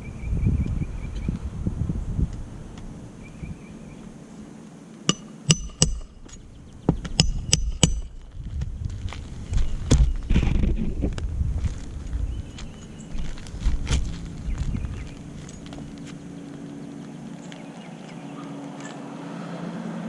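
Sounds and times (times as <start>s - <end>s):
sharp metallic knocks: 5.1s - 8.2s
low rumbling noise: 5.1s - 18.0s.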